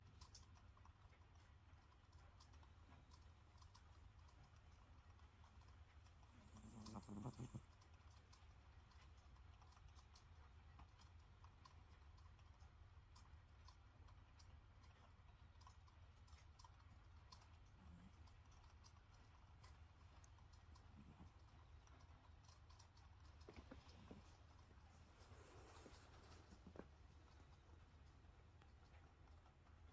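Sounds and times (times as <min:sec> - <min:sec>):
low steady hum: 0:00.0 - 0:29.9
small clicking sounds: 0:00.0 - 0:29.9
cat snoring: 0:06.3 - 0:07.6.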